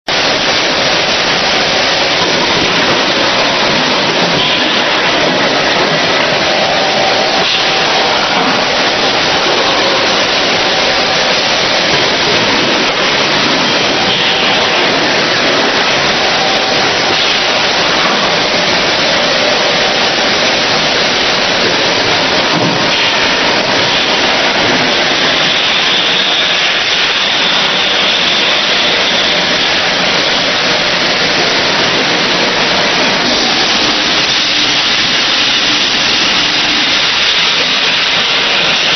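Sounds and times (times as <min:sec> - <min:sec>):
packaging machine hissing: 0:00.1 - 0:38.9.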